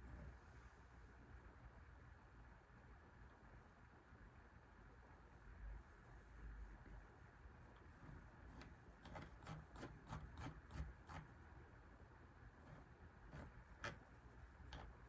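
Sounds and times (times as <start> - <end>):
faint typing on keyboard: 7.7 - 11.4, 12.6 - 15.0.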